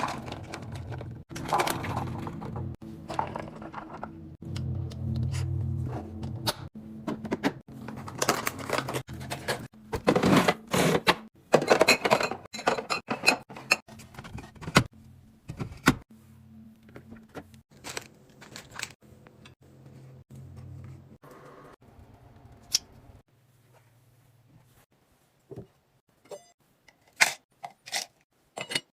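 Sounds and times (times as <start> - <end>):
snack packaging crinkling: 17.7 - 19.0.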